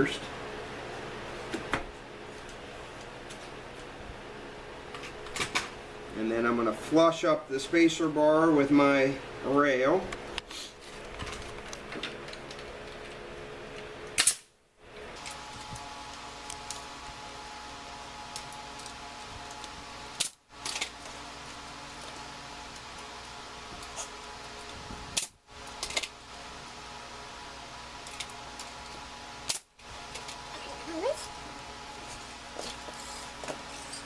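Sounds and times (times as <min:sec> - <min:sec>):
steady background hum: 0:00.0 - 0:34.0
loud sharp snaps: 0:14.2 - 0:14.6.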